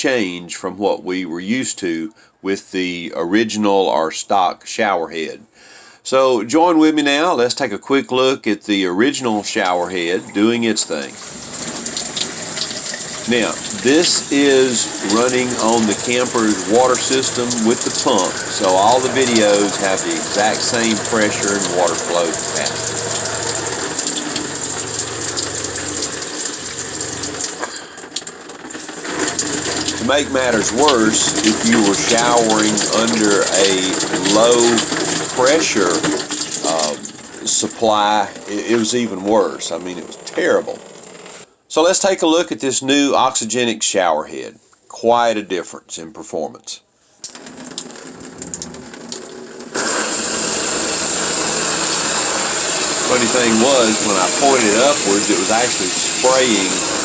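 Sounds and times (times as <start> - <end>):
water pump humming: 9.1 - 41.5, 47.2 - 57.0
shower head spraying water: 9.6 - 41.5, 47.2 - 57.0.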